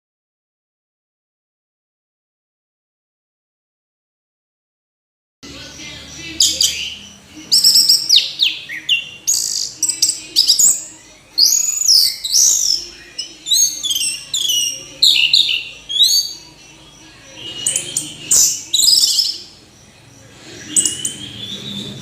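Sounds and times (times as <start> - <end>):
thrush singing: 5.4 - 22.0.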